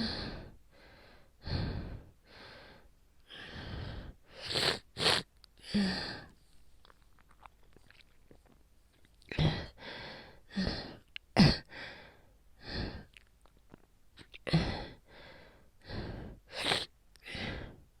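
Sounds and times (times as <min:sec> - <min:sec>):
woman coughing hard: 0:11.4 - 0:11.7.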